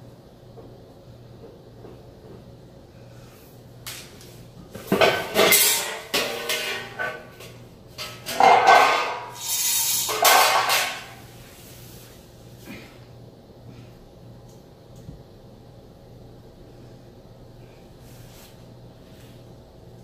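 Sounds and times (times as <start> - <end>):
metal parts clattering and scraping: 8.0 - 11.1.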